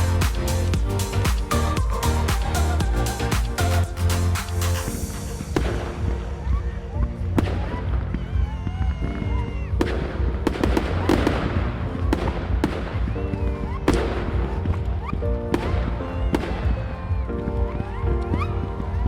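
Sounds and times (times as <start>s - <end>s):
fireworks bursting with bangs: 0.0s - 6.6s, 9.8s - 17.0s
fireworks crackling: 0.0s - 7.8s
music playing: 0.0s - 19.0s.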